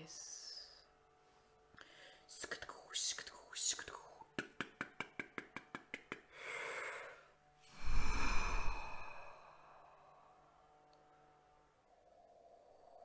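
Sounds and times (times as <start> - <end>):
person exhaling forcefully: 7.7 - 10.0.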